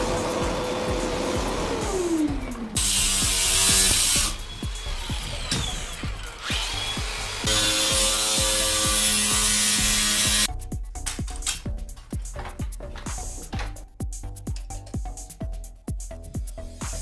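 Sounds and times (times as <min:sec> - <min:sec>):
power drill running: 0:00.0 - 0:10.5
background music with steady beat: 0:00.0 - 0:17.0.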